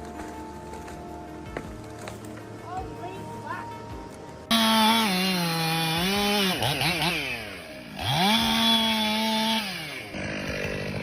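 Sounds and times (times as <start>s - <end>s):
chainsaw running at high revs: 4.5s - 11.0s.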